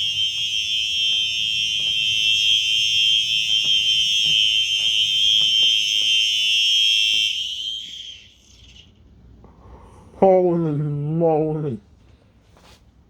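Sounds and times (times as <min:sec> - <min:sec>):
fire alarm horns sounding: 0:00.0 - 0:08.9.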